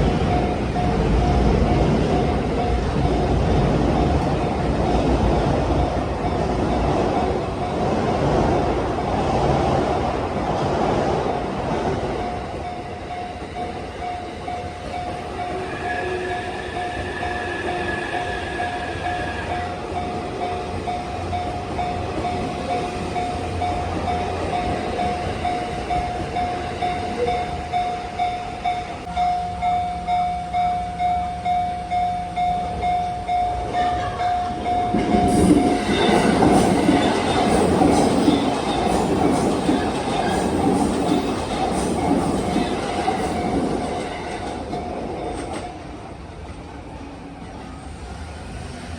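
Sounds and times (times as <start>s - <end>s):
electric train wheels rumbling: 0.0s - 48.9s.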